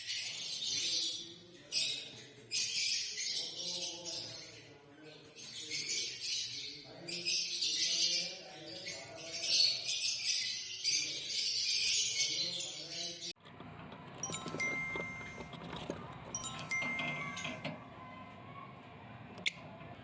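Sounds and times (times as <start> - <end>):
music with jingling bells: 14.2 - 17.8
tinkling music: 14.2 - 18.0.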